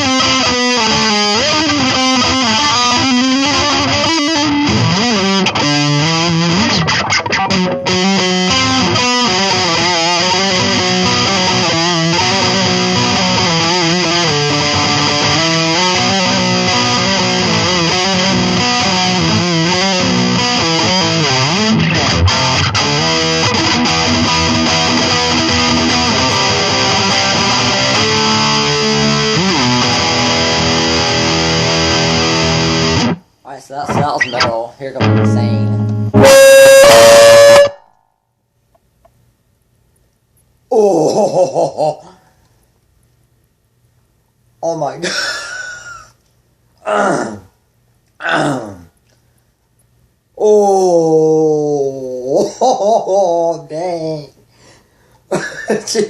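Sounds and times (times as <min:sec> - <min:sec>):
distorted electric guitar: 0:00.0 - 0:33.3, 0:33.9 - 0:37.9.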